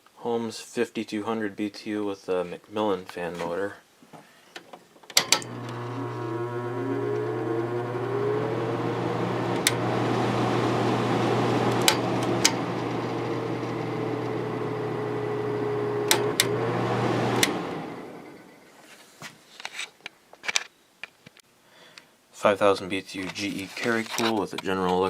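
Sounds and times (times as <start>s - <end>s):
air conditioner fan motor hum: 5.2s - 18.6s
motor whine: 5.3s - 18.7s
sharp clicks: 16.0s - 16.6s.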